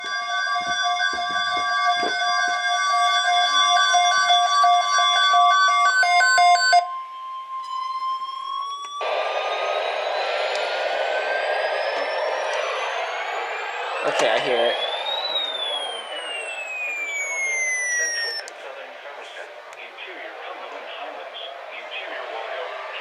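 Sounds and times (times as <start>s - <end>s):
steady alarm tone: 0.0s - 23.0s
tone rising in pitch: 7.1s - 18.4s
pulsing beeps: 7.7s - 18.5s.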